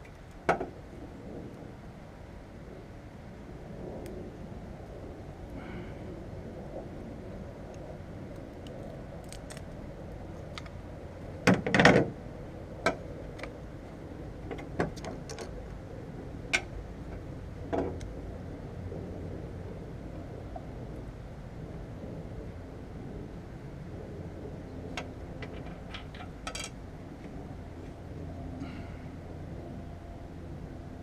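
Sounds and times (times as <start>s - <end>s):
low background hum: 0.0s - 31.0s
clicks and knocks of small objects: 8.4s - 10.8s, 25.4s - 26.8s.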